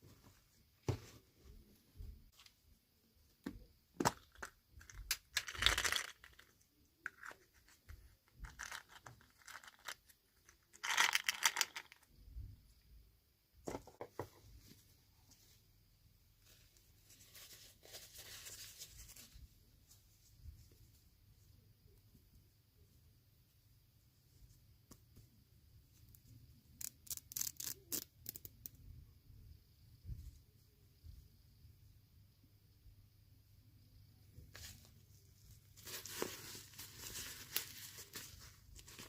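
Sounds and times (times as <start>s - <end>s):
soft packaging rustle: 16.3s - 21.4s, 34.4s - 39.0s.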